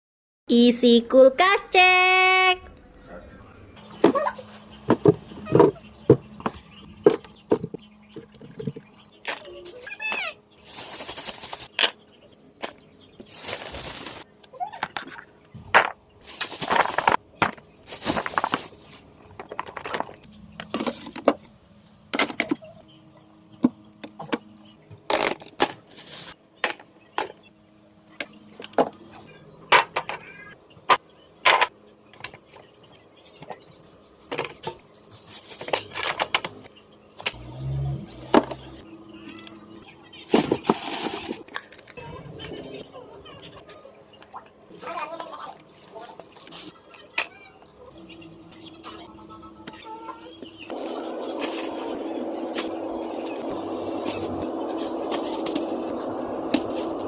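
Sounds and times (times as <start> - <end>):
food containers clattering: 12.6 - 21.5.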